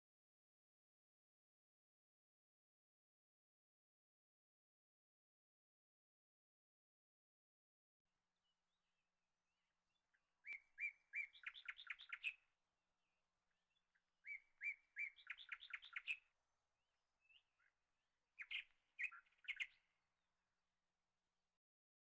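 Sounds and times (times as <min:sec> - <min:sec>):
songbird singing with trills: 0:09.9 - 0:12.4, 0:13.5 - 0:16.3, 0:18.4 - 0:19.9.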